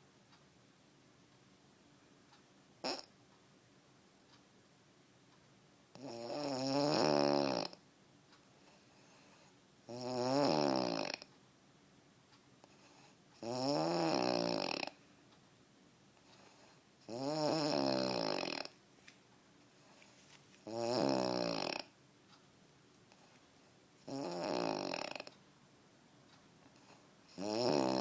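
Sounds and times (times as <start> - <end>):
man snoring: 2.8 - 3.1, 6.0 - 7.8, 9.9 - 11.3, 13.4 - 15.0, 17.1 - 18.7, 20.7 - 21.9, 24.1 - 25.3, 27.3 - 28.0.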